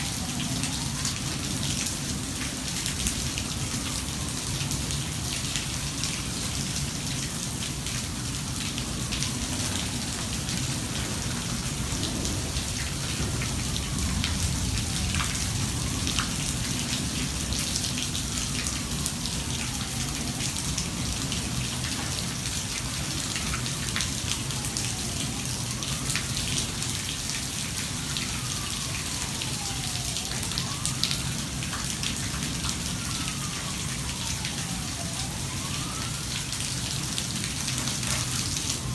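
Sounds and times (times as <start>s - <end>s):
faint siren wailing: 0.0s - 38.9s
heavy rain falling: 0.0s - 38.9s.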